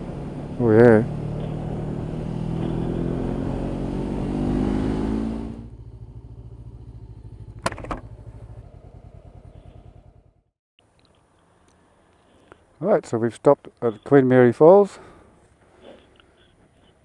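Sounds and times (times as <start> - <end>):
motorcycle engine running: 0.0 - 10.5.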